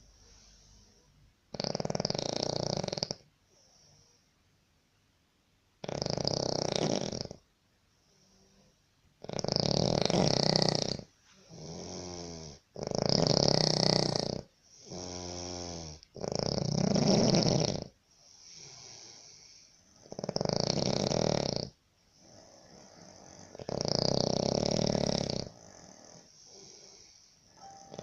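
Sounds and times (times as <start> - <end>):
man snoring heavily: 1.6 - 3.2, 5.8 - 7.4, 9.2 - 11.0, 11.6 - 17.9, 20.1 - 27.0.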